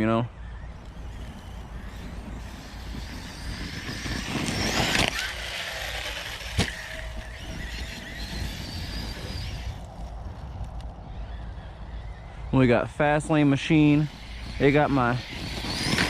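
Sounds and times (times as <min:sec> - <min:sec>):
electric motor whining: 0:00.5 - 0:10.1, 0:13.3 - 0:16.0.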